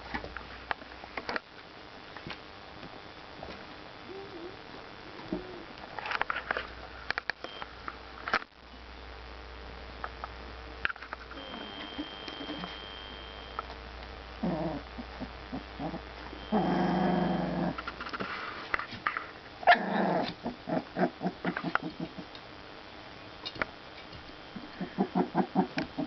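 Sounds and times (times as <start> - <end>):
puppies growling: 14.4 - 18.1, 19.6 - 22.4, 24.7 - 26.0.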